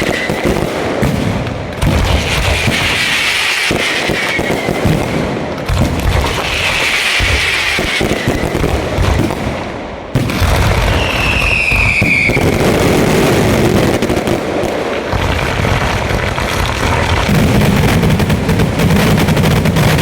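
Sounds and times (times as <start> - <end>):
fireworks bangs and crackling: 0.0 - 20.0
firework whistle: 2.4 - 4.8, 6.6 - 8.7, 10.5 - 13.4.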